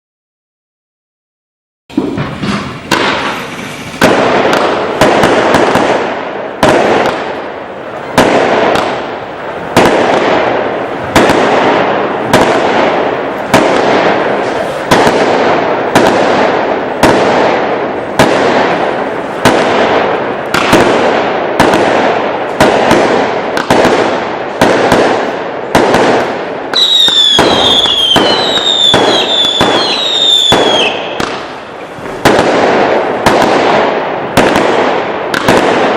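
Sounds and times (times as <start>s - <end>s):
firework shots banging and crackling: 1.9s - 35.9s
falling firework whistles: 26.7s - 31.4s.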